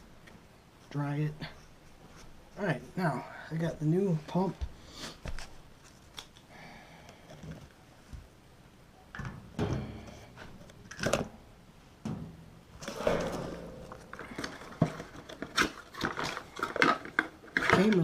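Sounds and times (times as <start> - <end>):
handling knocks: 12.0 - 15.3
packaging rustle: 14.1 - 18.0.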